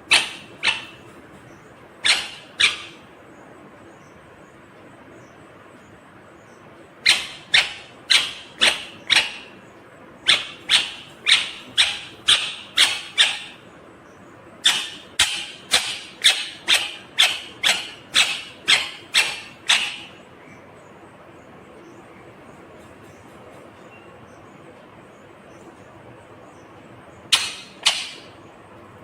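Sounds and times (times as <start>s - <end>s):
parrot giving sharp high calls: 0.0s - 1.2s, 2.0s - 3.1s, 7.0s - 9.6s, 10.2s - 13.6s, 14.6s - 20.2s, 27.3s - 28.4s.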